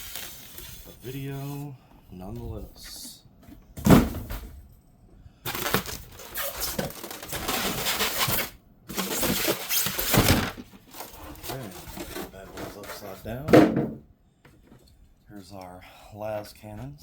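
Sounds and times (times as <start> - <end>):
packaging crinkling and rustling: 0.0 - 1.1, 5.5 - 13.2.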